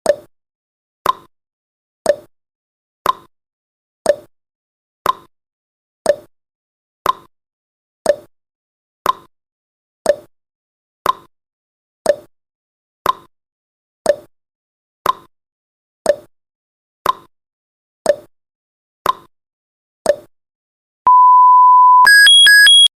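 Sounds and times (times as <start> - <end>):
steady high beep: 21.1 - 22.9
timer ticking: 22.0 - 22.9.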